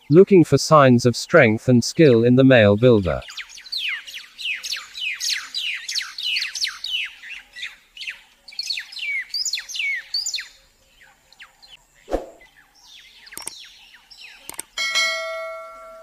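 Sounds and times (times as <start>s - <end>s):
flock of birds chirping: 2.1s - 14.9s.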